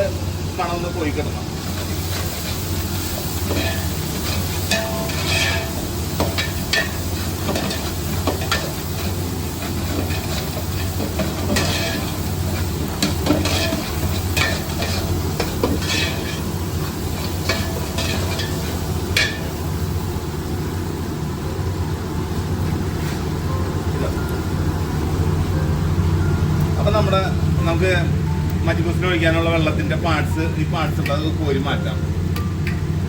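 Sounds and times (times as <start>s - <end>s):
food frying in a pot: 0.0s - 26.8s
steady low hum: 0.0s - 33.0s
utensil scraping a pot: 15.7s - 16.4s.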